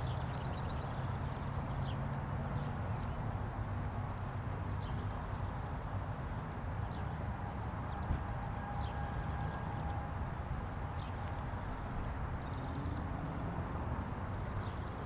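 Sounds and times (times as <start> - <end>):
distant warning siren: 8.0 - 11.0.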